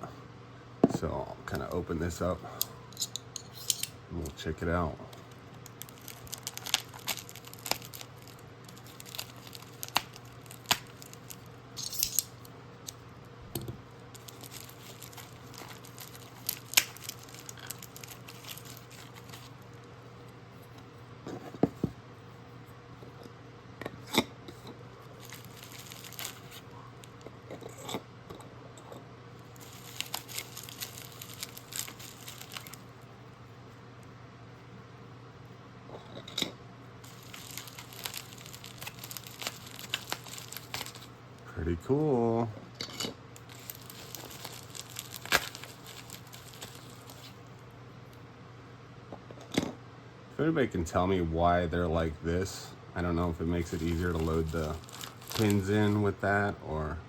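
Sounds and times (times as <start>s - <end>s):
packaging tearing and crinkling: 5.3s - 13.0s, 14.1s - 19.6s, 25.0s - 27.2s, 29.5s - 32.9s, 37.0s - 41.1s, 43.4s - 47.5s, 53.6s - 56.1s
small items clicking and tapping: 5.6s - 19.5s, 37.0s - 41.1s, 43.4s - 47.3s.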